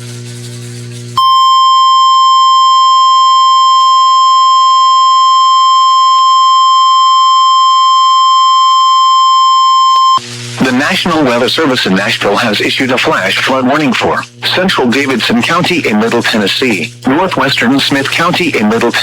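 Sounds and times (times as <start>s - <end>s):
steady alarm tone: 1.2s - 11.0s.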